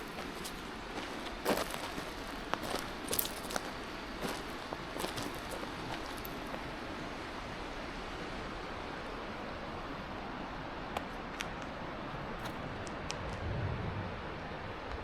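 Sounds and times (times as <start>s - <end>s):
outdoor background hiss: 0.0s - 15.0s
low rumble: 13.2s - 14.9s.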